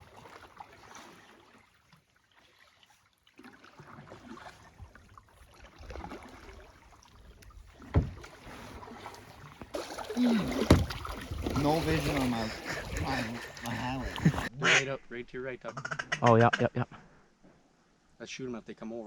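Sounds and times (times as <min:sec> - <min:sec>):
water splashing: 0:00.0 - 0:14.5
small knocks: 0:07.8 - 0:08.6, 0:10.6 - 0:11.6
loud thump: 0:07.9 - 0:08.3, 0:10.6 - 0:11.2.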